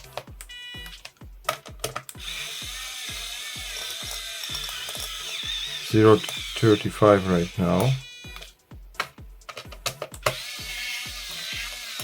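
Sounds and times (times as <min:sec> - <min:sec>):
screwdriver clicks: 0:00.0 - 0:06.8, 0:07.8 - 0:12.0
electric screwdriver motor whirring: 0:02.1 - 0:08.6, 0:10.2 - 0:12.0.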